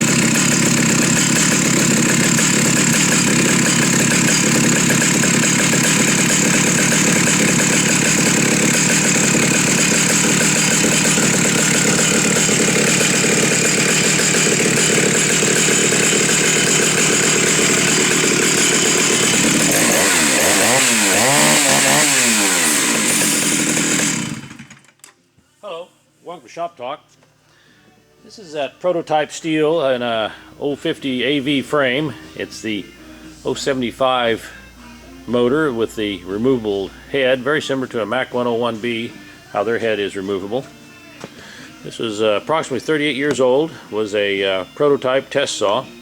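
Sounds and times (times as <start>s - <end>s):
chainsaw engine revving: 0.0s - 25.0s.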